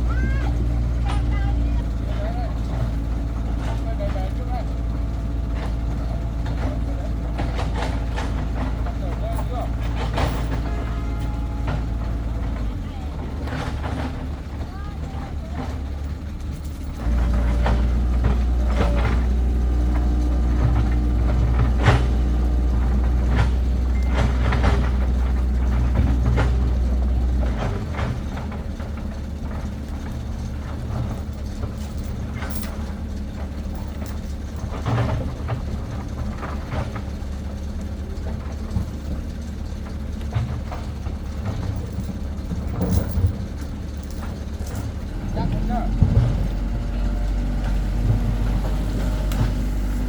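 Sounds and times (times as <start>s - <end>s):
excavator engine droning: 0.0s - 50.0s
metallic knocks and clanks: 5.0s - 14.6s.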